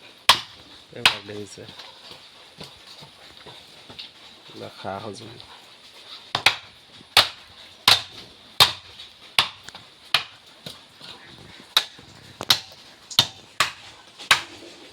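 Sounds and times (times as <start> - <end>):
hammer striking wood: 0.3 - 1.3, 6.4 - 10.3, 11.8 - 14.6.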